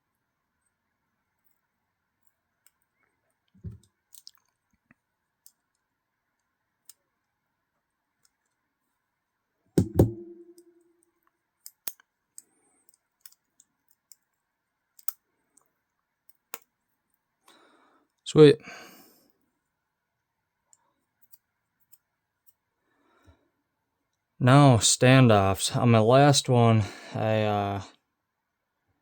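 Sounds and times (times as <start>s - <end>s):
ringing metal knock: 9.8s - 10.7s
small metal parts clicking: 15.0s - 15.7s.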